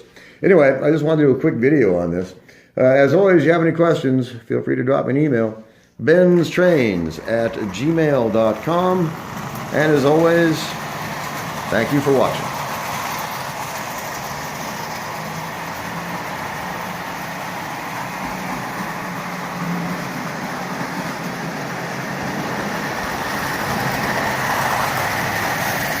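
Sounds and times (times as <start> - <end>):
toy train motor whirring: 6.4 - 26.0.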